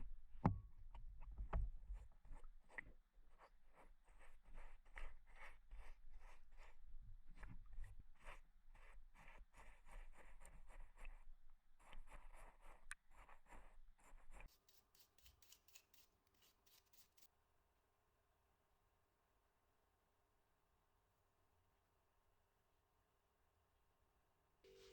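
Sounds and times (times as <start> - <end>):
light scratches: 1.9 - 17.3
brush scrubbing metal: 14.2 - 17.3.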